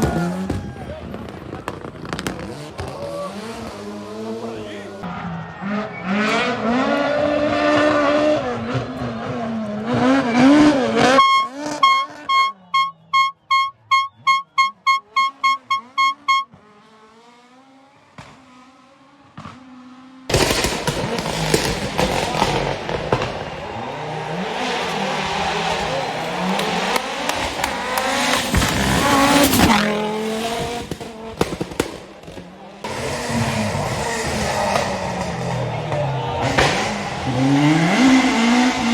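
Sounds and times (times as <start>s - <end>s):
rally car engine revving: 0.0s - 38.9s
rush of engine and tyre noise: 0.0s - 38.9s
short beeps: 11.1s - 16.5s.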